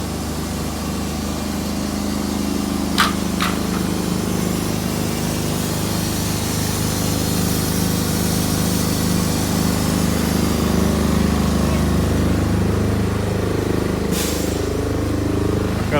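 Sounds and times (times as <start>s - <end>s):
engine running: 0.0s - 15.9s
sharp hissing clanks: 2.8s - 11.9s, 14.1s - 15.0s.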